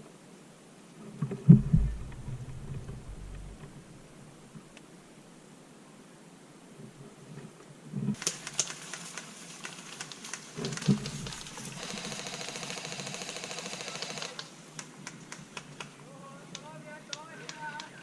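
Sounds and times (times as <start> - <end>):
low thumps: 1.3 - 4.7
airsoft gun firing: 11.8 - 14.5.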